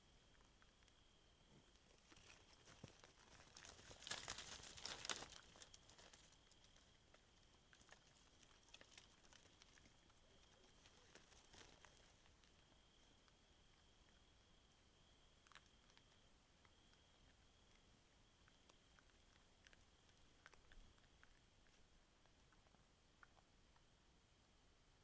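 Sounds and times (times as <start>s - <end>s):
faint steady high tone: 0.0s - 25.0s
quiet night ambience: 0.0s - 25.0s
wild boar rustling in dry litter: 1.7s - 12.9s.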